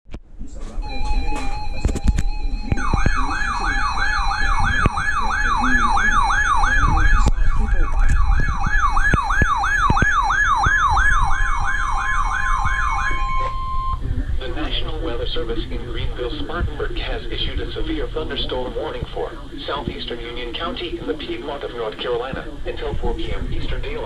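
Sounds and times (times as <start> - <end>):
electronic siren wailing: 0.8 - 14.4.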